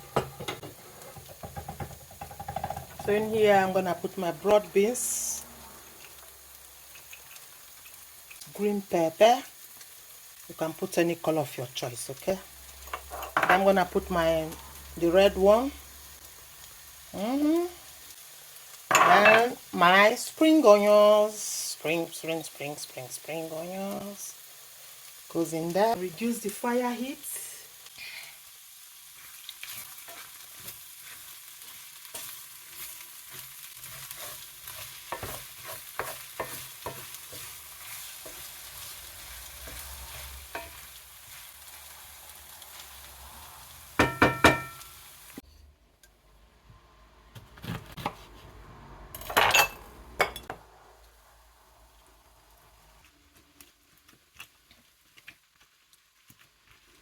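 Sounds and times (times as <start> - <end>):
vegetables sizzling in a pot: 0.0 - 45.5, 48.6 - 57.0
spoon scraping against pot: 12.9 - 13.6, 33.3 - 38.5.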